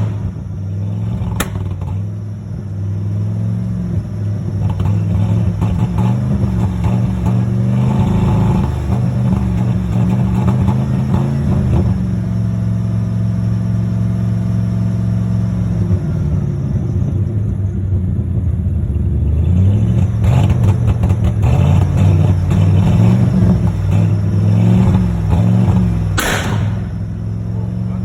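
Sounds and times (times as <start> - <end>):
truck engine idling and revving: 0.0 - 28.0
short loud burst: 26.2 - 27.2.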